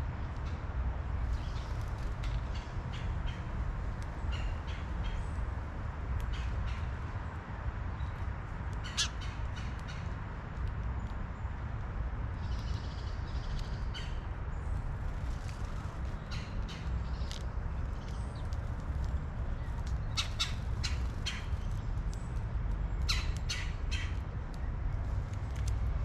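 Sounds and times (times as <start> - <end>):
birds giving harsh calls: 8.8 - 10.1, 20.0 - 21.7, 23.1 - 24.2.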